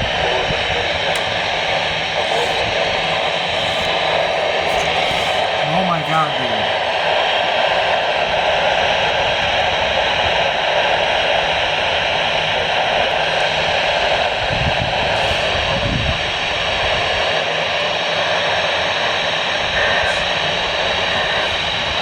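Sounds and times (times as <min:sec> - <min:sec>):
radio static hiss: 0:00.0 - 0:15.8, 0:17.4 - 0:22.0.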